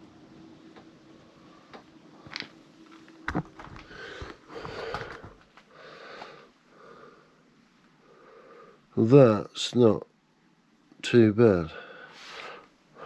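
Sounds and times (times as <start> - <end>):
man breathing through the nose: 3.8 - 8.9, 11.7 - 13.0.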